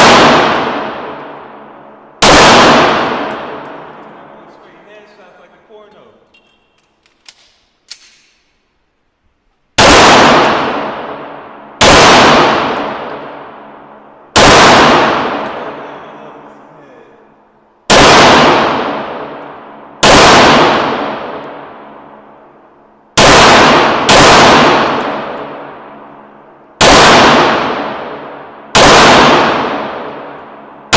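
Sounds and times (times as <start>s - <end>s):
pistol shots with echo: 0.0s - 4.3s, 9.8s - 16.6s, 17.8s - 30.9s.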